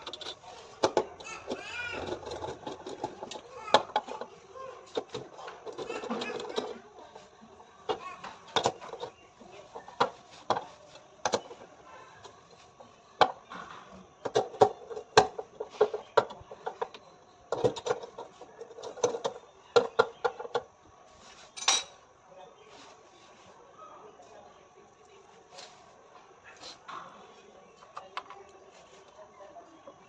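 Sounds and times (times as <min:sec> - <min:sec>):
metal rattle: 0:00.0 - 0:06.9
knocks and clinks of metal tools: 0:21.6 - 0:22.0.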